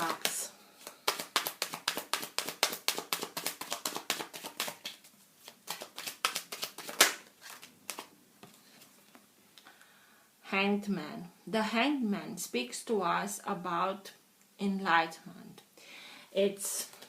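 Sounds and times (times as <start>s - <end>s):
cards being shuffled: 0.0s - 9.2s.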